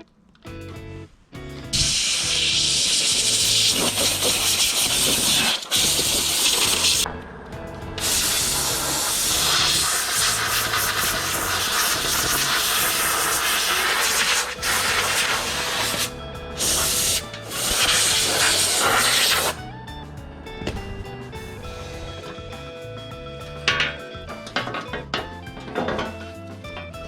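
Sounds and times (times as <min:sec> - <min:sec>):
background music with bass line: 0:00.4 - 0:27.0
loud continuous hiss: 0:01.7 - 0:07.0, 0:08.0 - 0:19.6.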